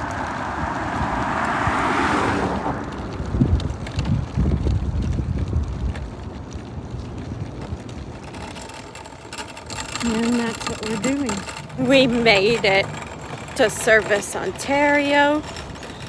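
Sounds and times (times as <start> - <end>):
wind on microphone: 0.0 - 8.6
vehicle rumbling with bumps: 0.0 - 16.0.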